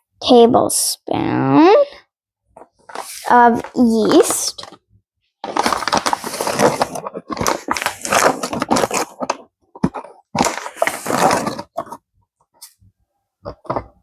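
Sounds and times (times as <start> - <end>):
packaging crinkling: 5.4 - 12.0.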